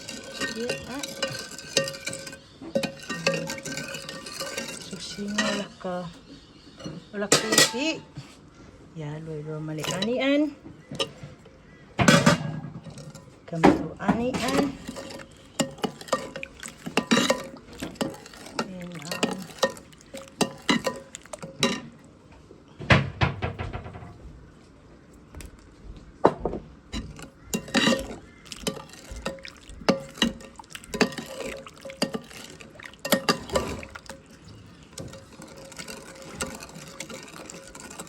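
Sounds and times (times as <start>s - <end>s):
liquid being poured: 0.0s - 5.6s, 14.4s - 21.8s, 27.0s - 38.0s
dishes and pots clinking: 0.0s - 8.2s, 9.8s - 22.1s, 26.2s - 38.0s.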